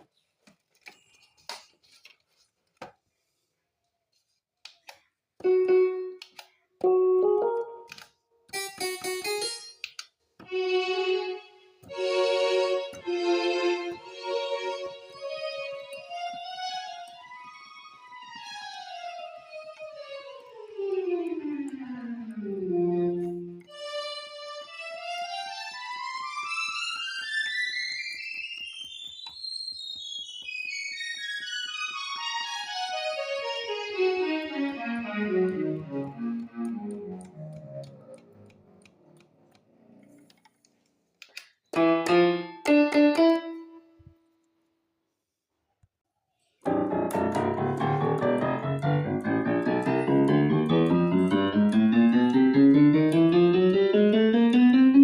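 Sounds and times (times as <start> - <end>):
digital piano notes: 5.4 - 9.9, 18.2 - 39.2, 41.7 - 44.0, 46.6 - 55.0.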